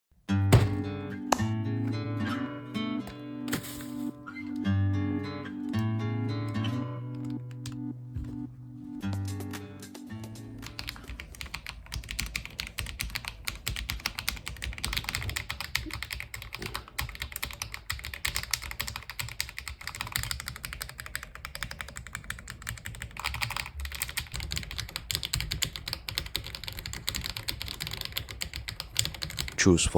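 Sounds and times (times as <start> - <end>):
music: 0.3 - 11.6
mechanical keyboard typing: 10.6 - 29.6.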